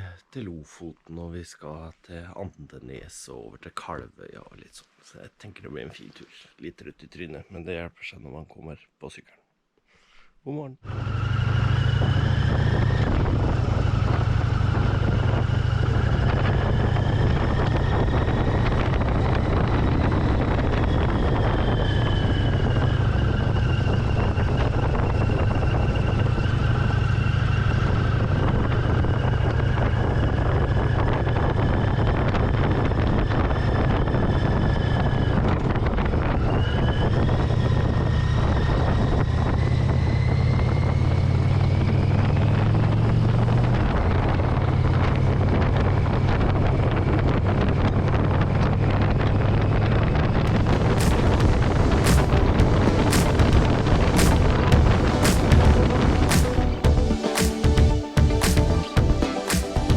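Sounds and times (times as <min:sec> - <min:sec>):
wind rushing past microphone: 0:10.9 - 0:59.9
motorcycle engine rumbling: 0:49.7 - 0:59.9
thin whine: 0:50.5 - 0:59.9.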